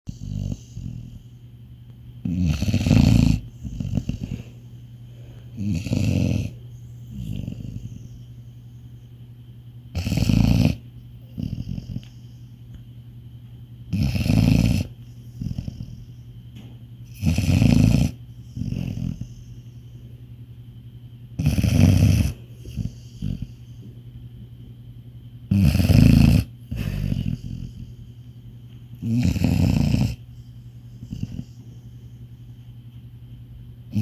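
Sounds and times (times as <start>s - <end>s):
dog snoring: 0.1s - 1.4s, 2.2s - 4.6s, 5.5s - 8.4s, 9.9s - 12.4s, 13.9s - 16.2s, 17.1s - 19.6s, 21.4s - 23.8s, 25.5s - 28.3s, 29.0s - 32.0s.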